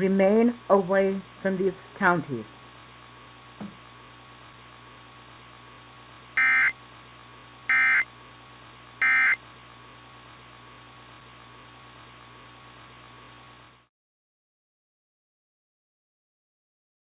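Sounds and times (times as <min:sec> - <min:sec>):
digital data signal bursts: 0:06.4 - 0:06.8, 0:07.7 - 0:08.1, 0:09.0 - 0:09.4.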